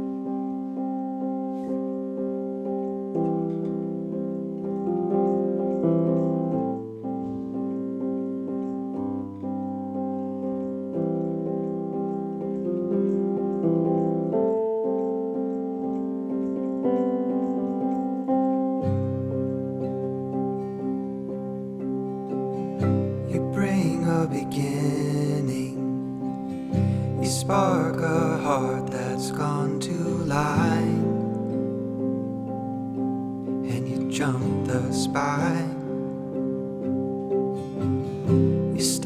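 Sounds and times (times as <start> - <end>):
piano playing repeated chords: 0.0 - 39.0.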